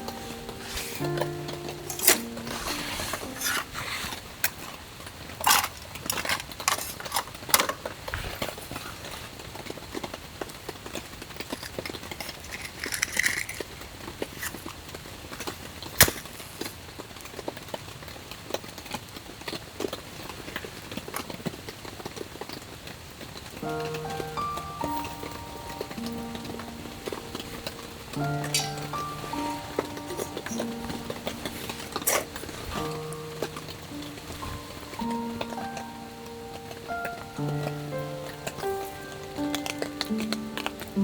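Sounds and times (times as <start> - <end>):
objects clicking and knocking: 0.7 - 8.6, 11.3 - 16.4, 23.7 - 35.9.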